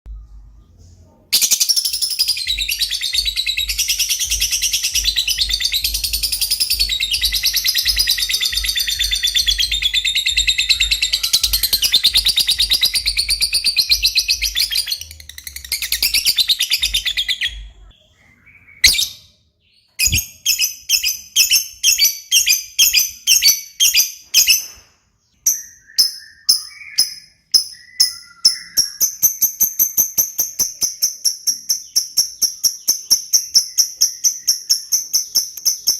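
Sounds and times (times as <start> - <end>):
lovebird high-pitched trill: 1.4 - 17.2, 25.4 - 35.9
bird sharp repeated chirps: 1.4 - 35.9.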